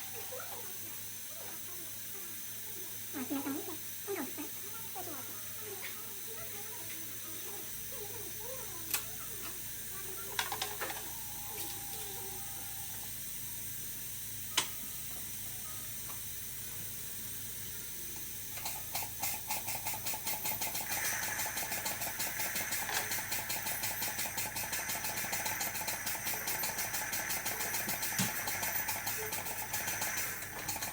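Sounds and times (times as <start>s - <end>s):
dental equipment clatter: 10.4s - 11.9s, 18.6s - 30.9s
dental suction hiss: 18.6s - 30.9s.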